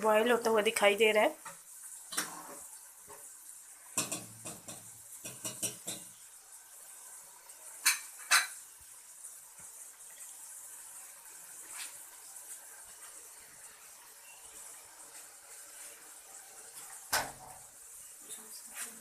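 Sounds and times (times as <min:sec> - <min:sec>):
sugar syrup boiling hiss: 0:00.0 - 0:19.0
metal utensils clattering on a pot: 0:04.0 - 0:06.1, 0:07.8 - 0:08.6.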